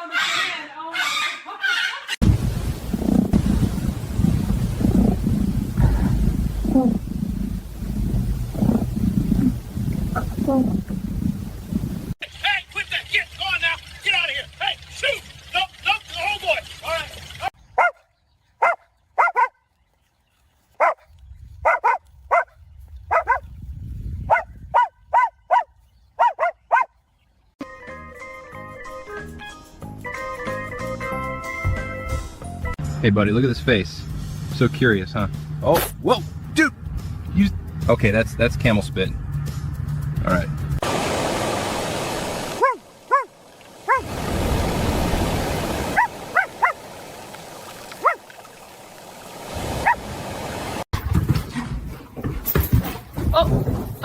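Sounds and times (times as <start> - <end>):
dog barking: 17.8 - 19.6, 20.8 - 23.4, 24.3 - 27.0, 42.6 - 43.3, 43.9 - 44.1, 45.9 - 46.8, 48.0 - 48.2, 49.8 - 50.0
music: 27.6 - 40.8.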